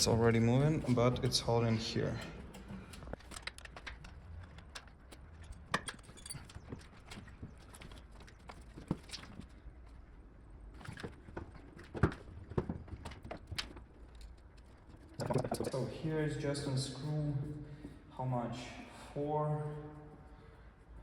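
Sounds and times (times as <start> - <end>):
tools clicking and knocking: 0.0 - 10.0, 10.8 - 15.9.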